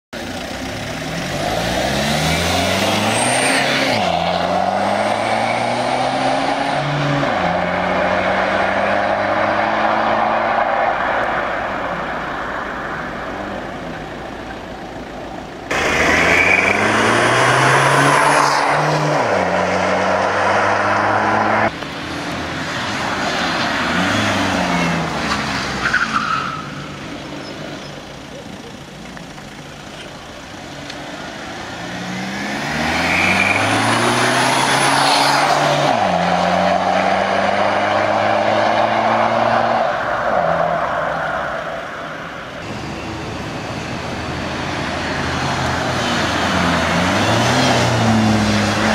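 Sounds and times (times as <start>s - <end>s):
car engine accelerating through gears: 0.6s - 11.4s, 15.7s - 21.7s, 30.8s - 40.6s.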